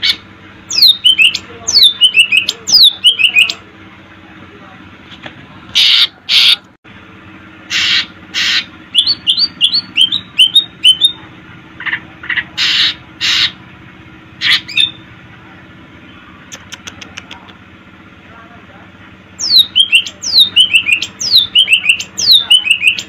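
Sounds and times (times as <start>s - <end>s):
bird harsh rasping calls: 0.0s - 3.6s, 5.7s - 6.7s, 7.6s - 11.2s, 11.8s - 13.6s, 14.4s - 15.1s, 19.4s - 23.0s.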